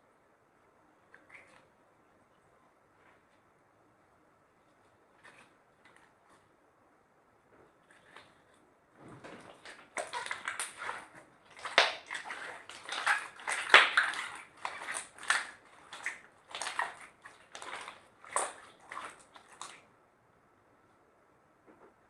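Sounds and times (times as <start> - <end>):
slime squelching by hand: 1.0 - 3.4, 4.6 - 6.6, 7.7 - 19.9.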